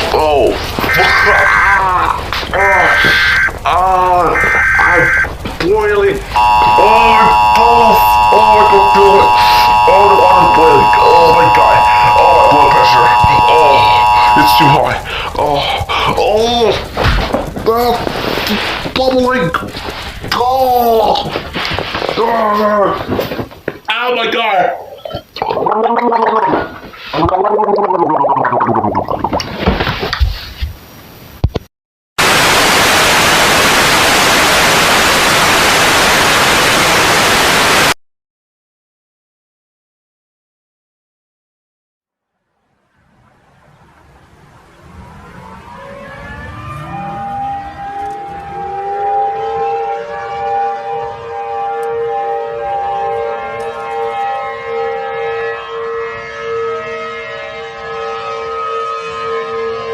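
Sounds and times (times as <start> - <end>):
person's voice: 0.0 - 16.9, 17.6 - 19.7, 20.3 - 21.3
loud white noise static: 0.0 - 22.2, 32.2 - 38.0
civil defense siren wailing: 0.3 - 18.5, 43.0 - 59.9.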